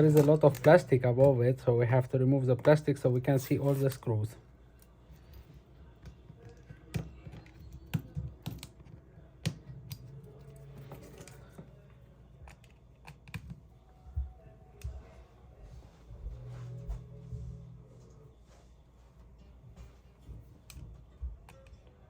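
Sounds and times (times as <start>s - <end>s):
hand tools clicking on plastic: 0.0s - 1.3s, 6.0s - 10.1s.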